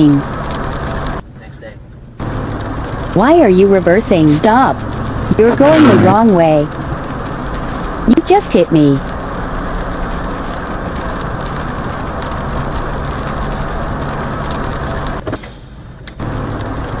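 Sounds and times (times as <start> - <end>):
car engine and traffic noise: 0.0 - 17.0
low hum: 2.0 - 15.2.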